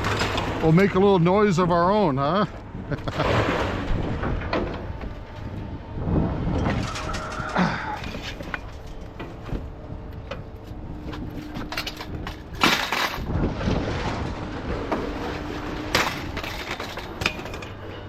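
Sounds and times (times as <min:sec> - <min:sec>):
scrap metal clanking: 0:11.1 - 0:13.4, 0:15.0 - 0:18.0.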